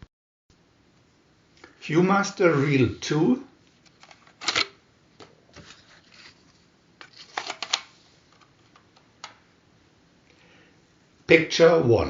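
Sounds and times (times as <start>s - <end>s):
paper and cardboard rustling: 5.5s - 8.7s.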